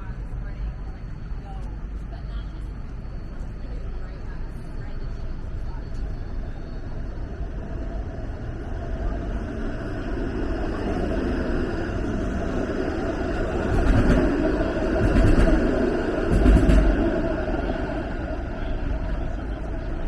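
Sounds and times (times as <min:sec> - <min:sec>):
city street traffic: 0:00.0 - 0:20.0.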